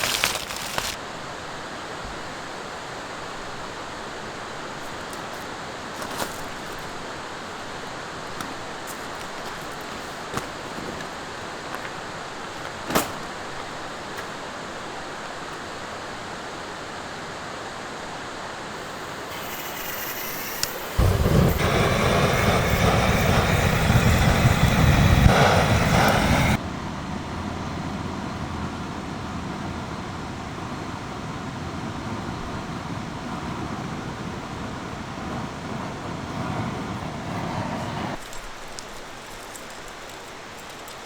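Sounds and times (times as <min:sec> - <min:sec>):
stream rushing: 0:00.0 - 0:01.0.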